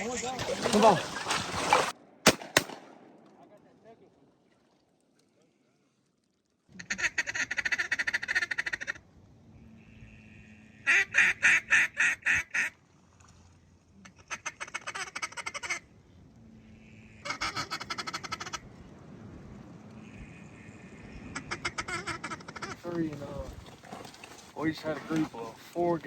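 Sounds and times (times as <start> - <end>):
duck call chattering: 6.8 - 9.0, 14.1 - 15.8, 17.2 - 18.6, 21.3 - 22.8
loud duck call quacks: 6.8 - 9.0, 17.2 - 18.6, 21.3 - 22.8.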